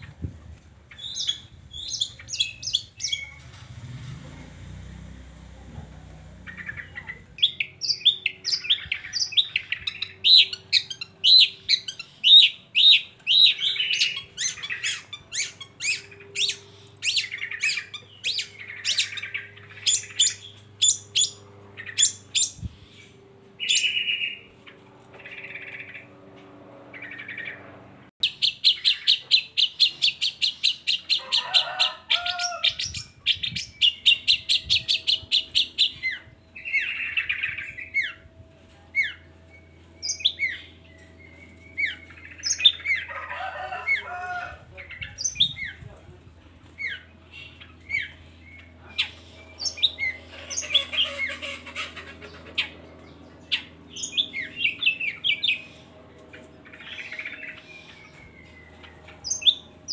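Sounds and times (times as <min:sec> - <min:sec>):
bird singing sharp high chirps: 0:00.9 - 0:03.4, 0:06.5 - 0:24.5.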